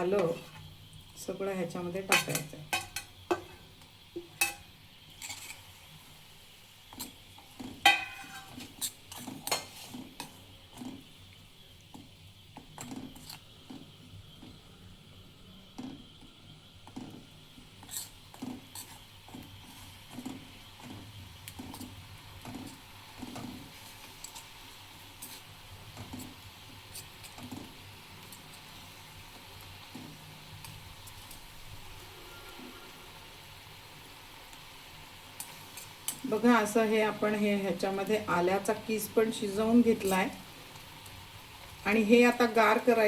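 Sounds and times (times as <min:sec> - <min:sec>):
faint sizzle: 0:00.0 - 0:43.0
spoon scraping and knocking pan: 0:02.0 - 0:03.6, 0:04.2 - 0:05.8, 0:06.9 - 0:11.1, 0:15.8 - 0:24.5.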